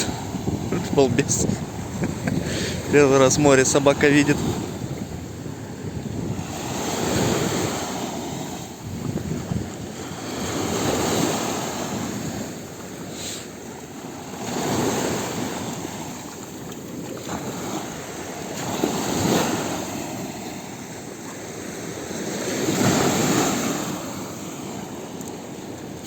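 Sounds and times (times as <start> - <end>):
sea waves washing onto shore: 0.0 - 26.0.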